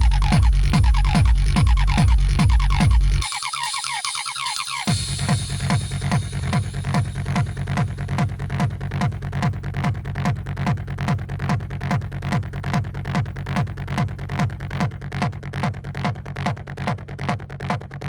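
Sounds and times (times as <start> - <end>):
droning bass: 0.0 - 3.2, 4.9 - 18.0
clattering percussion: 0.0 - 18.0
pounding kick drum: 0.0 - 18.0.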